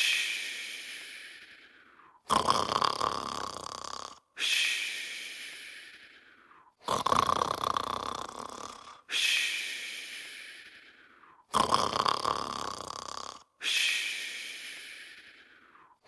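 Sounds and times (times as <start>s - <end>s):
cartoon character snoring: 2.2s - 4.4s, 6.8s - 9.1s, 11.4s - 13.6s.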